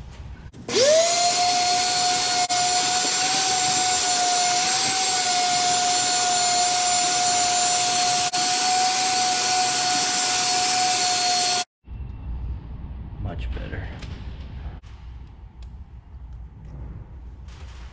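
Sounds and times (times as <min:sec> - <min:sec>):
electric power tool whining: 0:00.6 - 0:11.7.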